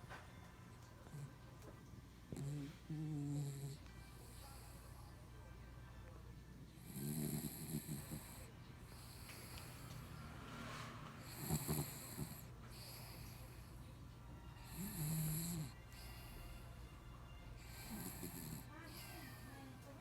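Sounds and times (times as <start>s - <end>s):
pet snoring: 1.0s - 1.4s, 2.3s - 5.0s, 6.7s - 13.8s, 14.6s - 16.6s, 17.6s - 19.6s.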